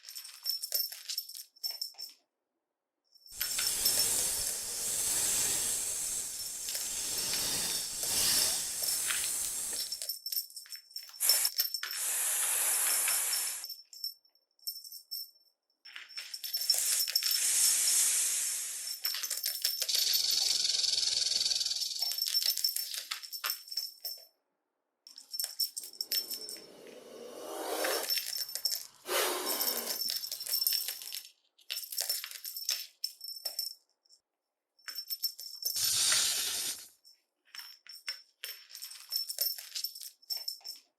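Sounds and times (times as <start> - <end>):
snake hissing: 3.4 - 10.0, 12.0 - 13.6, 16.8 - 19.0, 20.0 - 21.8, 26.0 - 28.2, 29.0 - 30.0, 35.8 - 36.9.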